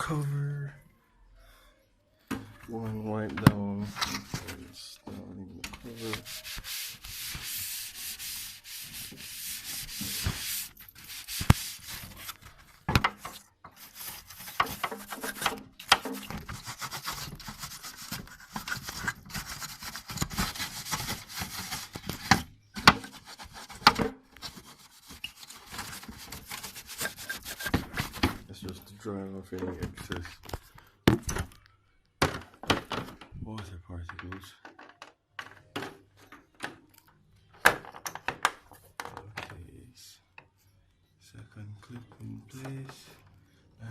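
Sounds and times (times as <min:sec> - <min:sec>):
cloth wiping plastic cover: 0:05.7 - 0:28.5.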